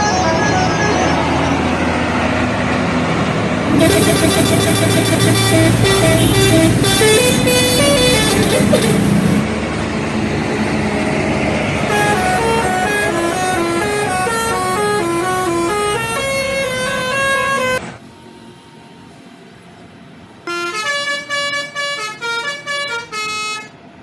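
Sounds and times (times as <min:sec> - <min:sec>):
musical air horn melody: 0:03.7 - 0:09.4, 0:11.9 - 0:17.8, 0:20.5 - 0:23.7.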